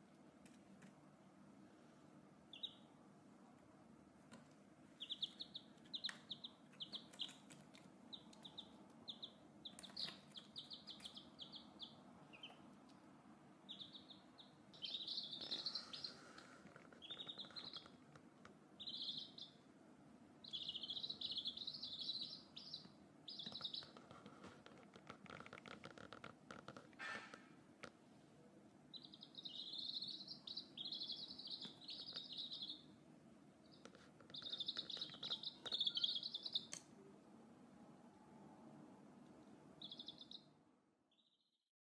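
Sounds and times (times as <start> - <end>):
small bird chirping: 2.5 - 3.0, 4.9 - 12.8, 13.7 - 18.1, 18.8 - 19.7, 20.4 - 24.2, 28.9 - 33.0, 33.6 - 36.8, 39.8 - 40.5, 41.1 - 41.6.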